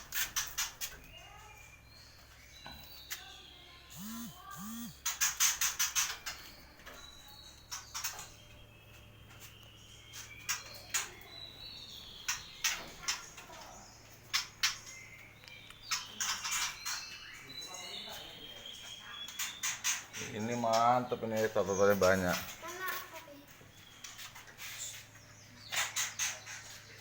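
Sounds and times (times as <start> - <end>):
birds chattering: 0.0 - 27.0
faint high chirps: 0.9 - 5.2.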